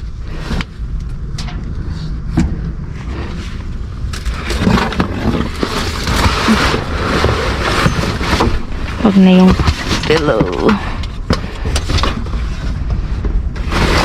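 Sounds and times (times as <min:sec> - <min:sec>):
steady low rumble: 0:00.0 - 0:14.0
items clattering: 0:04.1 - 0:14.0
plastic rustling: 0:04.2 - 0:11.0, 0:13.6 - 0:14.0.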